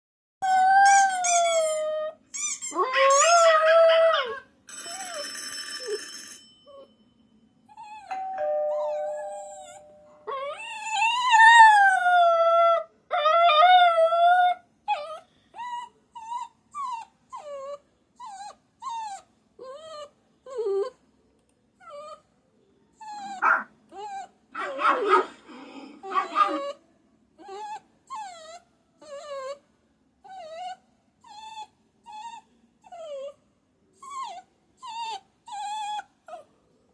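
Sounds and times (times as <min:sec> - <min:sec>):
puppy howling: 0:00.4 - 0:04.4, 0:08.1 - 0:15.2, 0:23.1 - 0:25.2, 0:26.1 - 0:26.8
puppy whining: 0:00.4 - 0:06.0, 0:07.7 - 0:21.0, 0:21.8 - 0:22.2, 0:23.0 - 0:26.8, 0:27.4 - 0:29.6, 0:30.3 - 0:33.4, 0:34.0 - 0:36.5.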